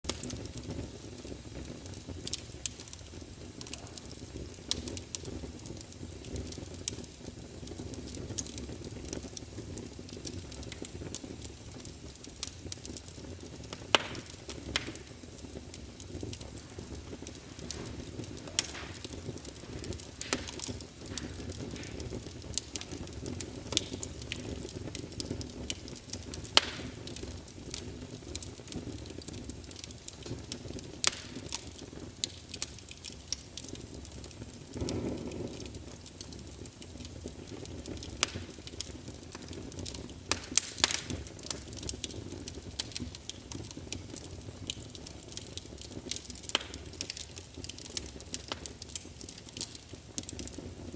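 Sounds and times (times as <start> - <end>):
log fire crackling and popping: 0.0 - 50.9
fire low rush: 16.4 - 23.1.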